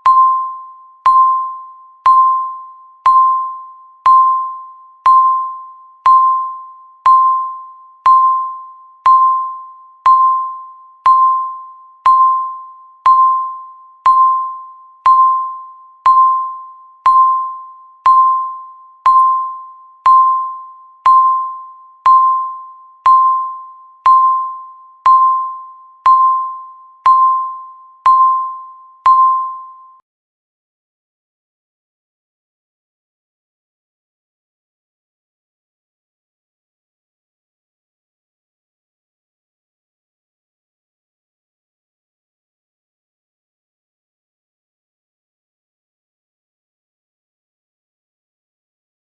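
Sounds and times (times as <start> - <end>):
timer electronic beep: 0.0 - 30.0.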